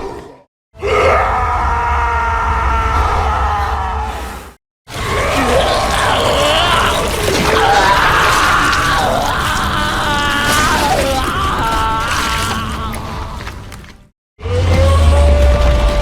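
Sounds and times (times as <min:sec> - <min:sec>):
giant creature screeching cry: 0:00.0 - 0:04.3, 0:04.9 - 0:13.6.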